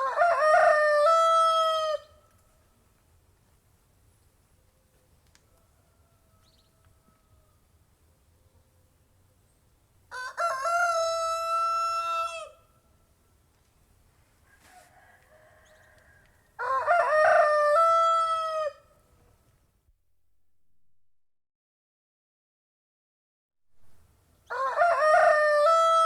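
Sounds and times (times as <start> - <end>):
rooster crowing: 0.0 - 2.2, 5.5 - 7.6, 10.1 - 12.7, 14.4 - 18.9, 24.5 - 26.0.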